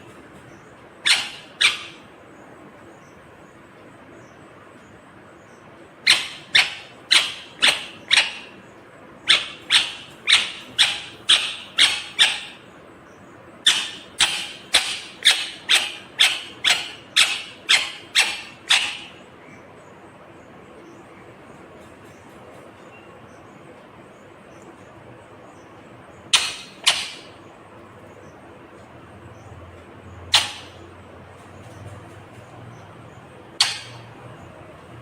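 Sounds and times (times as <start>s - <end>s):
parakeet screeching calls: 1.0s - 2.1s, 6.0s - 8.6s, 9.2s - 12.7s, 13.6s - 19.3s, 26.3s - 27.4s, 30.3s - 30.9s, 33.6s - 34.1s.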